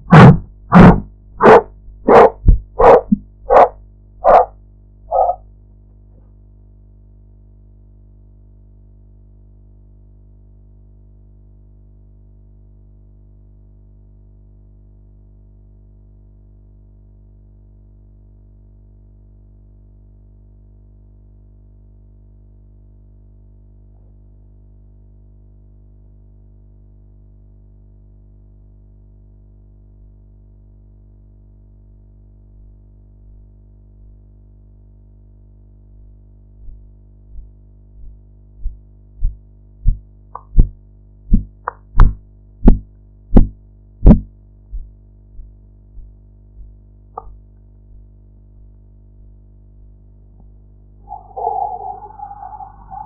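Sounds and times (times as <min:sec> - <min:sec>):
heartbeat thumps through stethoscope: 0:00.0 - 0:03.6, 0:36.6 - 0:47.4
steady low hum: 0:00.0 - 0:12.6, 0:32.6 - 0:53.0
higher-pitched sound: 0:51.1 - 0:53.0.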